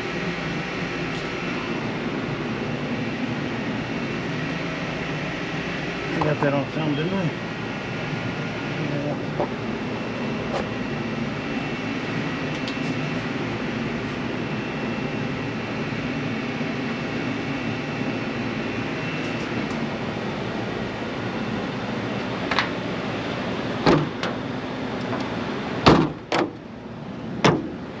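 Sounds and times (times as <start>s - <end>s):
fan running with mechanical noise: 0.0s - 28.0s
sharp knocks: 27.4s - 27.7s.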